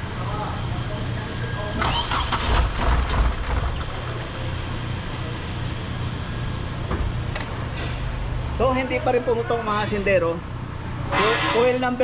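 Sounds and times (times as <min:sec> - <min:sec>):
low mechanical rumble: 0:00.0 - 0:12.0.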